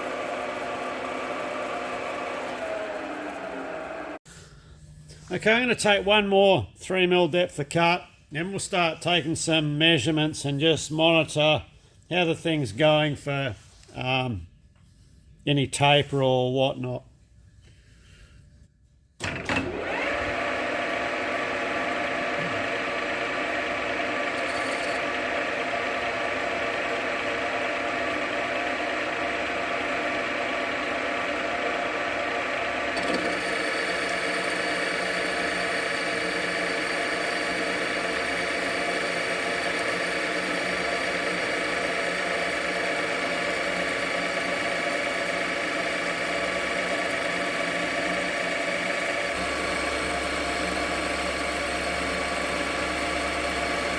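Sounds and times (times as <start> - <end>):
lathe gear whine: 0.0 - 4.2, 19.2 - 53.9
metal lathe running: 0.0 - 4.2, 19.5 - 53.9.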